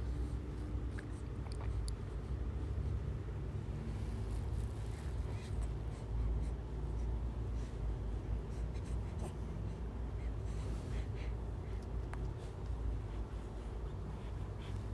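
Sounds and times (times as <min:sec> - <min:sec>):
scratchy rustling and handling noise: 0:03.8 - 0:05.6.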